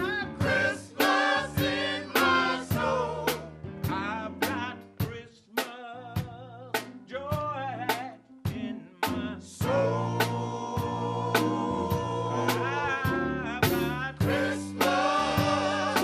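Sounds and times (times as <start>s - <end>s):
men's choir singing: 0.0s - 3.5s, 9.6s - 16.0s
drum kit beat: 0.0s - 16.0s.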